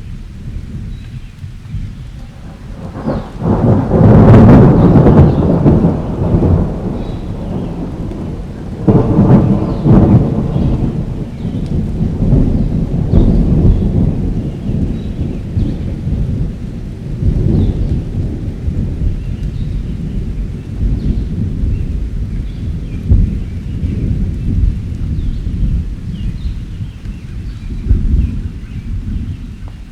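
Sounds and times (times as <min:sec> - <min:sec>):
rolling thunder: 0:00.0 - 0:29.9
steady rain: 0:00.0 - 0:29.9.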